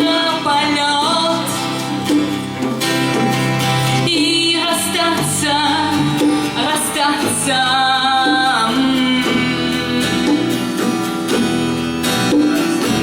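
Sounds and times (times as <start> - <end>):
person singing: 0.0 - 2.2, 4.0 - 10.8
guitar instrumental backing: 0.0 - 13.0.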